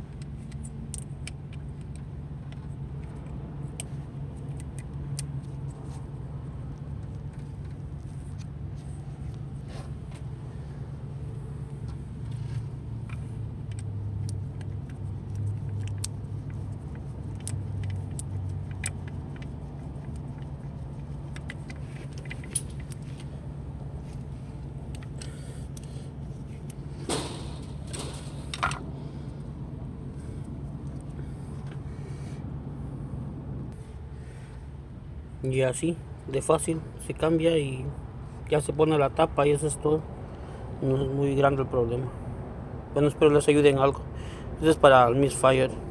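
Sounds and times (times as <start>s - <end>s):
steady low hum: 0.0s - 43.3s
small metallic clicks and clinks: 21.3s - 23.3s, 26.6s - 28.8s.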